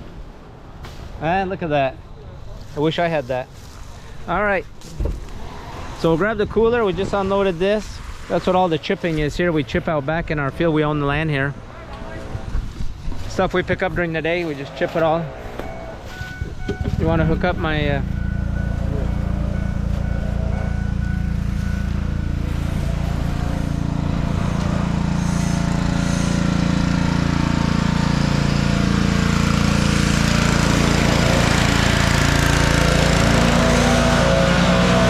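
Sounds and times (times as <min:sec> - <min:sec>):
engine running: 0:09.0 - 0:35.0.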